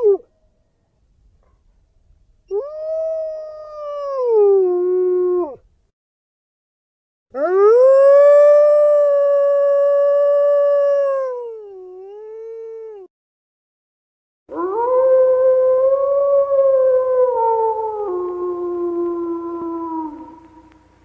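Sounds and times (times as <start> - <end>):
wolf howling: 14.5 - 20.8.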